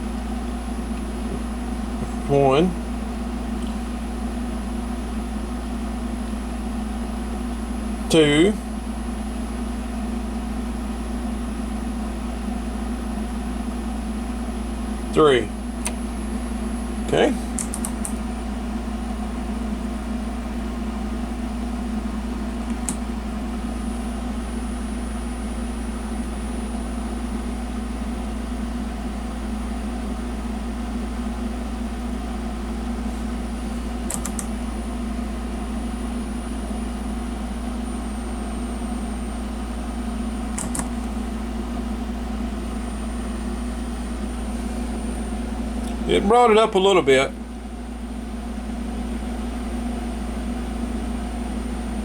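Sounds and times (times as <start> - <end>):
low mechanical hum: 0.0 - 52.0
faint clicks: 17.6 - 18.2.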